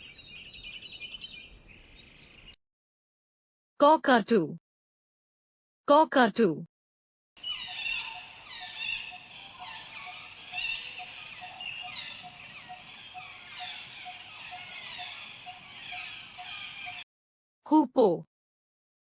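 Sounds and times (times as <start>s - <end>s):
cockatoos squawking: 7.4s - 17.0s.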